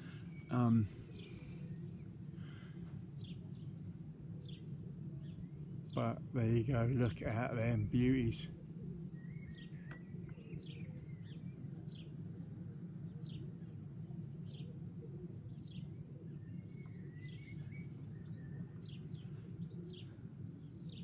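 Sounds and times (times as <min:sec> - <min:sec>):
bird chirping: 0:00.0 - 0:02.1, 0:09.1 - 0:12.2, 0:15.5 - 0:21.0
low outdoor rumble: 0:00.0 - 0:21.0.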